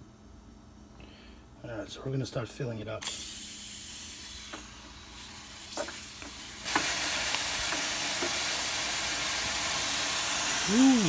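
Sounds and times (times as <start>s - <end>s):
refrigerant hissing through hose: 3.0s - 11.0s.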